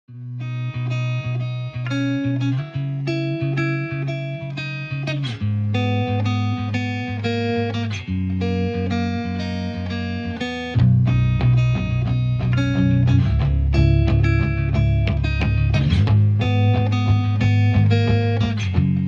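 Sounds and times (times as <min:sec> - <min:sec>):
plucked guitar notes: 0:00.1 - 0:19.0
held low bass notes: 0:10.8 - 0:19.0.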